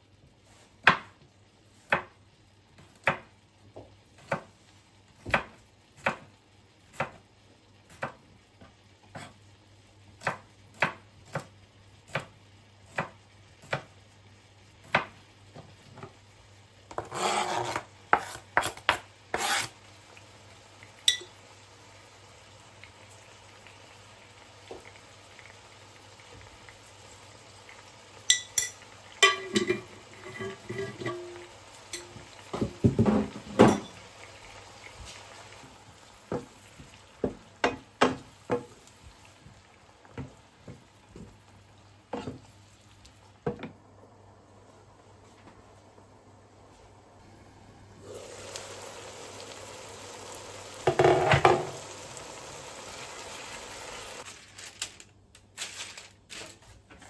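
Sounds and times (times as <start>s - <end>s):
knife chopping on cutting board: 16.9s - 19.7s
scraping rustle: 54.2s - 55.0s, 55.6s - 57.0s.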